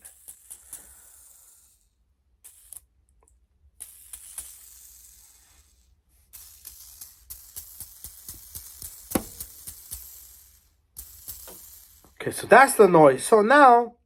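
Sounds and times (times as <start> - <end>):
ball bearing spinning with rasp: 6.3 - 12.2.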